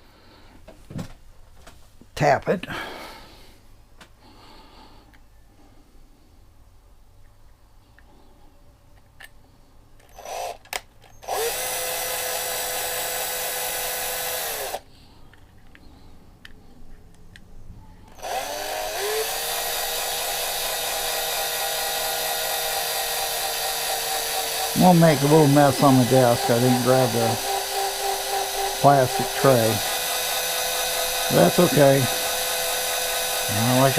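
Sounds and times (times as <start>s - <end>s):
small electric drill: 10.1s - 14.9s, 18.1s - 33.9s.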